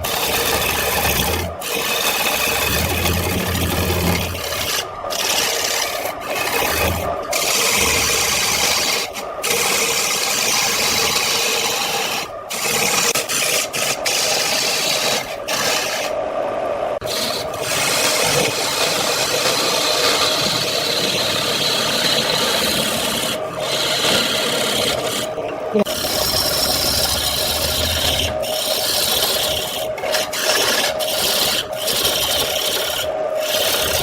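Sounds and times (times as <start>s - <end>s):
lathe tool scraping wood: 0.0s - 16.2s, 17.0s - 34.0s.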